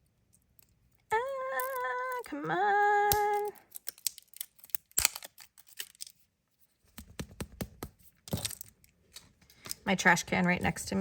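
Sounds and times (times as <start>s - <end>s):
woman humming: 1.1s - 3.6s.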